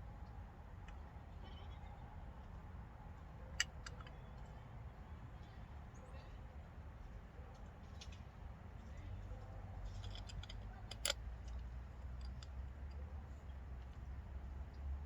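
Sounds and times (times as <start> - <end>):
metallic clicks of screws and tool: 3.6 - 4.5, 9.9 - 13.0.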